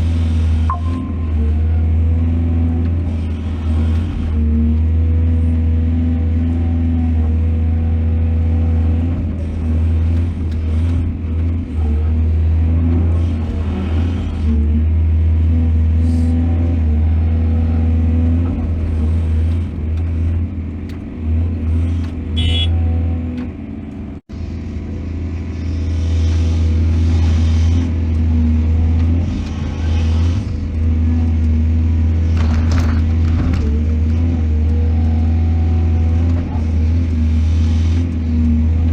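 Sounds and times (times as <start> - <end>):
diesel engine humming: 0.0 - 38.9
faint clatter: 32.3 - 34.8.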